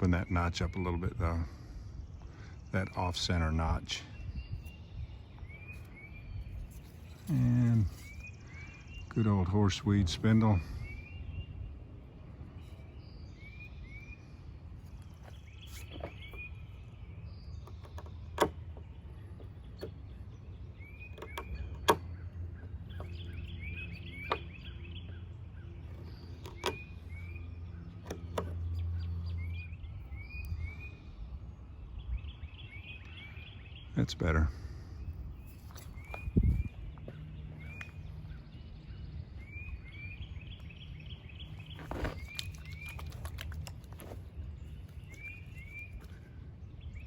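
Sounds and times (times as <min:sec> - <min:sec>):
small bird chirping: 0:02.2 - 0:34.5, 0:35.1 - 0:47.0
gear handling clicks and knocks: 0:25.8 - 0:27.2, 0:41.6 - 0:46.3.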